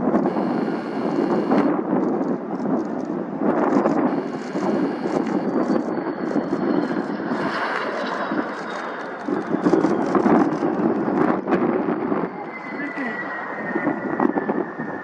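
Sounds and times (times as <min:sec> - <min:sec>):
high whine falling in pitch: 0:00.0 - 0:01.8, 0:03.7 - 0:07.8
aircraft rumble: 0:00.0 - 0:13.2.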